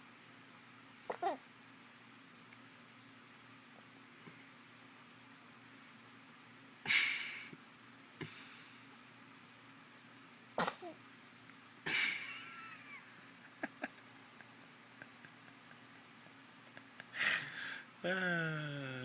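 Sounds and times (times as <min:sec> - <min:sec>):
baby sneezing: 0:01.1 - 0:01.4, 0:10.6 - 0:11.0.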